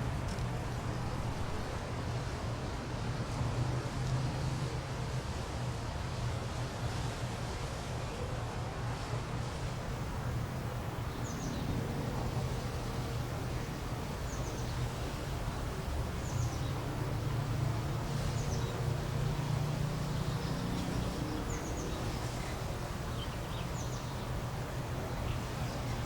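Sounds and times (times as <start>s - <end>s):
steady low hum: 9.4s - 26.0s.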